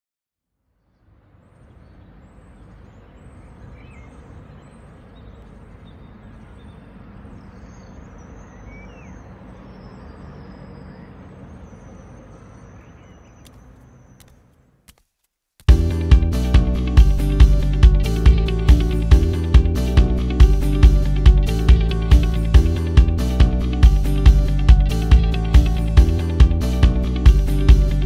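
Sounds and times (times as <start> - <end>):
low rumble of distant traffic: 0.6 - 14.8
small birds chirping: 0.8 - 14.8.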